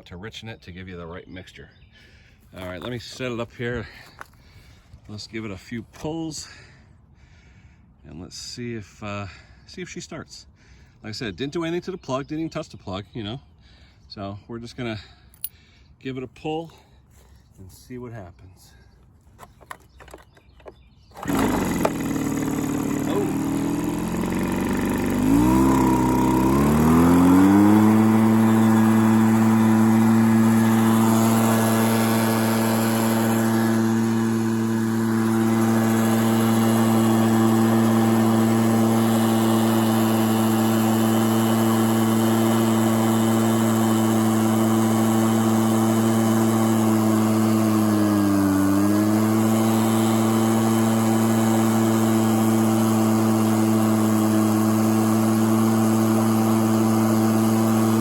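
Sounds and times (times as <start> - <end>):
leaf blower engine running: 2.6 - 4.8, 19.4 - 58.0.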